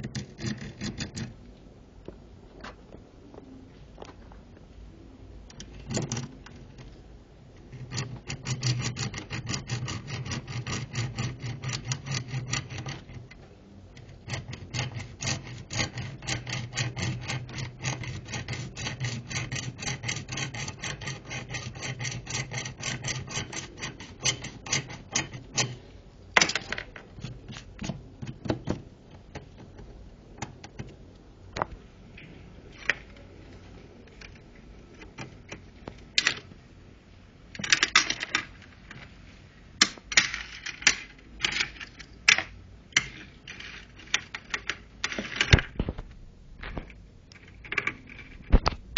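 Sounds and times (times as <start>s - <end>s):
wire saw rasping: 7.7s - 13.3s, 14.0s - 25.8s
sharp knocks and clicks: 26.4s - 31.8s.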